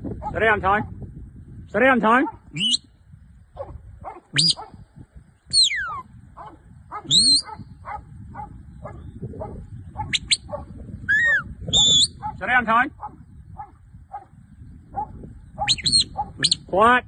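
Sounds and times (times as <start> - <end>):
dog barking: 0.2 - 0.4, 2.2 - 2.5, 3.6 - 4.8, 6.4 - 11.5, 12.2 - 16.5
shepherd whistle: 2.6 - 2.9, 4.4 - 4.6, 5.5 - 6.1, 7.1 - 7.6, 10.1 - 10.5, 11.1 - 12.2, 15.6 - 16.6.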